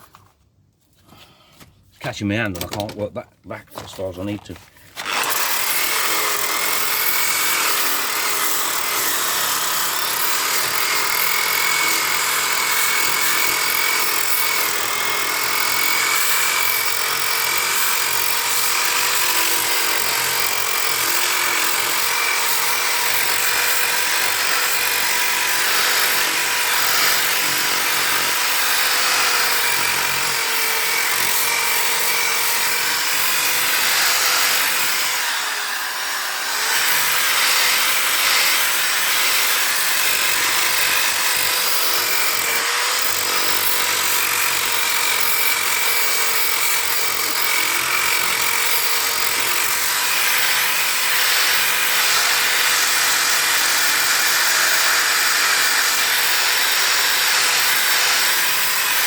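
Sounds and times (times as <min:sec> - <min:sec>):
power sander whining: 0:03.8 - 0:59.0.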